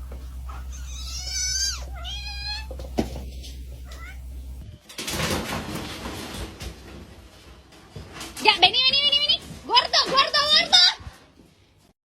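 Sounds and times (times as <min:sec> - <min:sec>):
steady low hum: 0:00.0 - 0:04.8
cat meowing: 0:00.7 - 0:02.8, 0:03.8 - 0:04.3.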